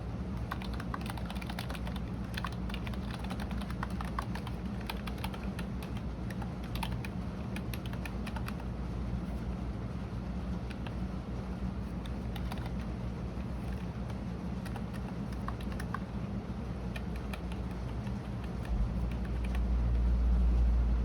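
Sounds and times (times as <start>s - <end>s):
steady low hum: 0.0s - 21.0s
computer keyboard key clicks: 0.4s - 8.6s, 12.0s - 12.9s, 13.6s - 16.0s, 16.9s - 19.6s
low rumble: 18.7s - 21.0s.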